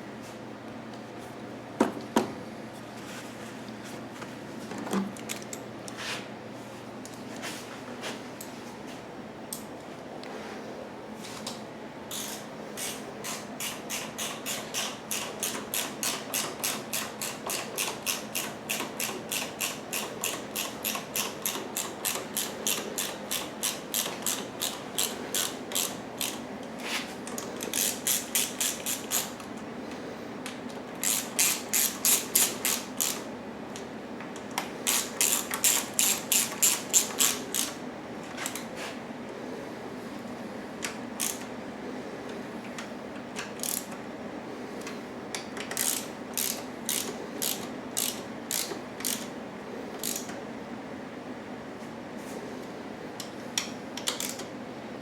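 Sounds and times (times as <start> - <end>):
hand ratchet clicking: 12.1 - 26.4, 27.3 - 29.5, 31.0 - 33.3, 34.5 - 37.8, 40.8 - 41.5, 43.4 - 44.0, 45.4 - 49.3, 50.0 - 50.3, 53.2 - 54.5.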